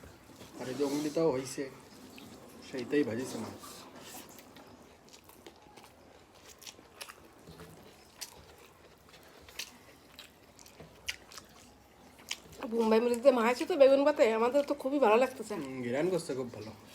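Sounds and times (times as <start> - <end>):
person chewing food: 3.6 - 13.2.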